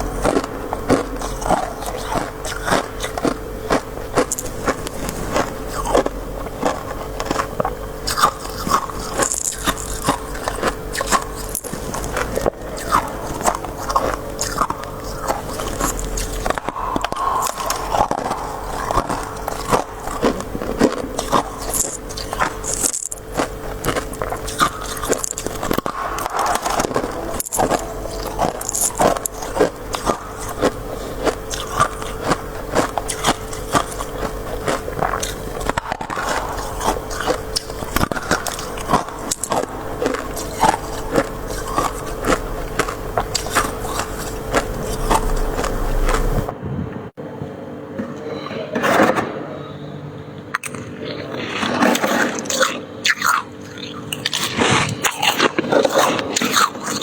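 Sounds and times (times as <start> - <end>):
ice crunching being chewed: 0.0 - 46.5, 50.5 - 57.0
steady low hum: 0.0 - 57.0.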